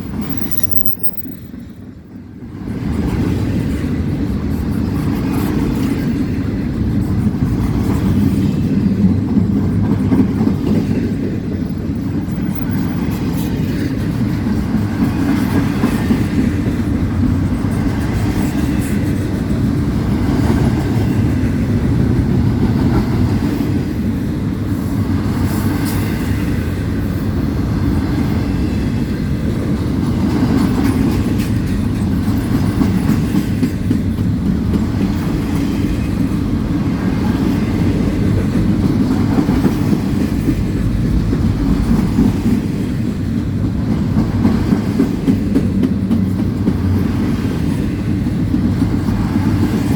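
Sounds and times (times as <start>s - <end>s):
freight train rumbling on rails: 0.0s - 49.9s
wheels clickety-clack over rail joints: 0.0s - 49.9s.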